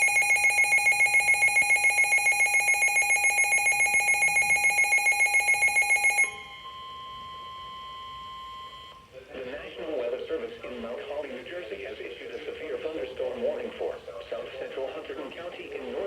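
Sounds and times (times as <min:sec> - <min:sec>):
rapidly pulsing electronic beep: 0:00.0 - 0:06.6
steady warning alarm tone: 0:00.0 - 0:09.1.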